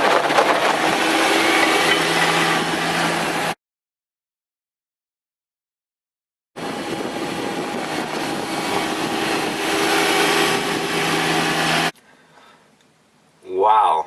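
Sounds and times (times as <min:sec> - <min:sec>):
tractor engine under load: 0:00.0 - 0:03.6.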